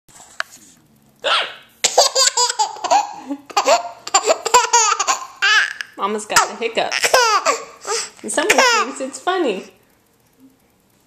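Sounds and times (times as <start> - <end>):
woman hiccuping: 1.2 - 1.7
baby laughing: 1.2 - 9.0.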